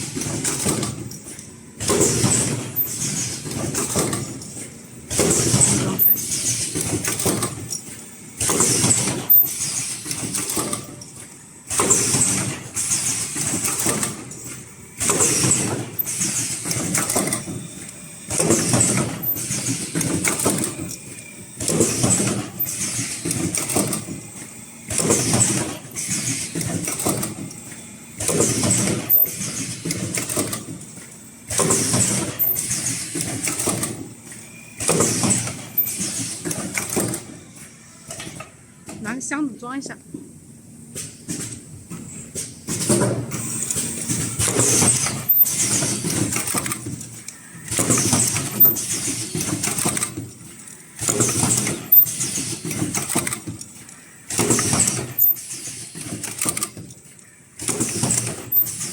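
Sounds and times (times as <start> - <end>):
welding machine mechanical bursts: 11.6 - 30.8, 42.7 - 58.9.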